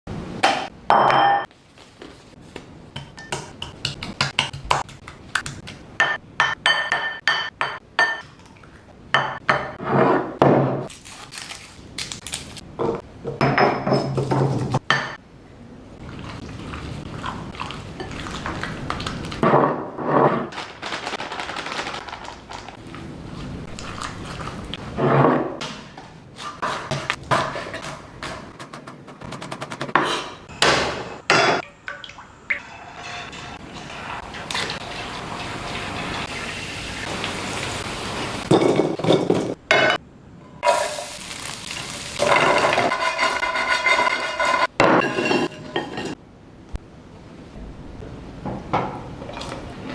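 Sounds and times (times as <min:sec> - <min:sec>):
utensils clinking against bowls: 0:41.8 - 0:46.2.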